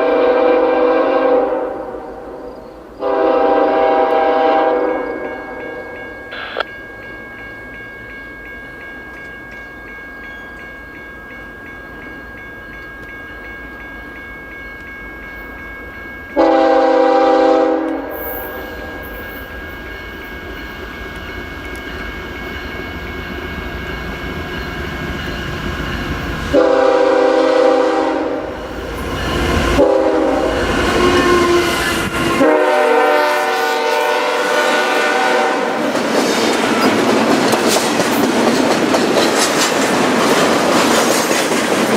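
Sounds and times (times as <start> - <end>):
locomotive air horn: 0.0 - 2.3, 3.0 - 6.6, 16.4 - 19.0, 26.5 - 28.6, 29.7 - 35.8
train wheel clatter: 35.8 - 41.9.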